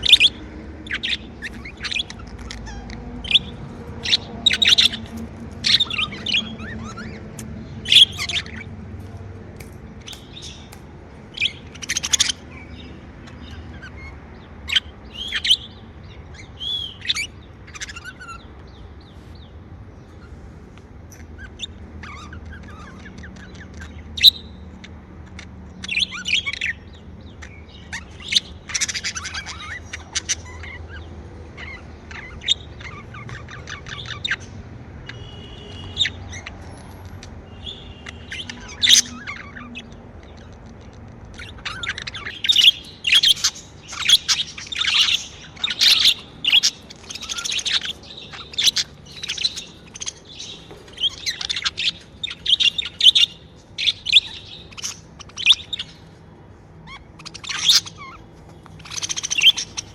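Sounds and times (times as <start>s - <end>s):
budgerigar squawks: 0.0s - 8.7s, 10.0s - 15.7s, 37.5s - 39.9s, 41.4s - 56.0s, 56.8s - 59.9s
budgerigars chirping and chattering: 0.0s - 59.9s.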